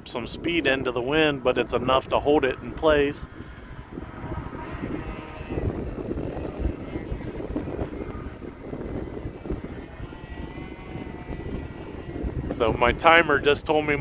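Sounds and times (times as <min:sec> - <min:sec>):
model plane electric motor drone: 0:00.0 - 0:14.0
wind buffeting microphone: 0:00.0 - 0:14.0.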